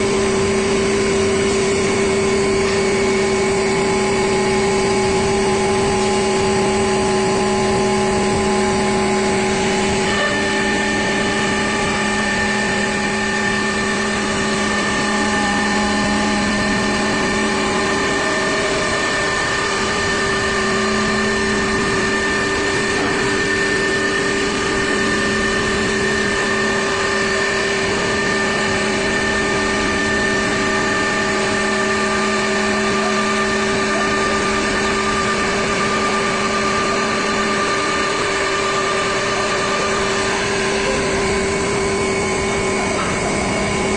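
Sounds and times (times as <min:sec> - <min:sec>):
wood router machine whine: 0:00.0 - 0:43.9.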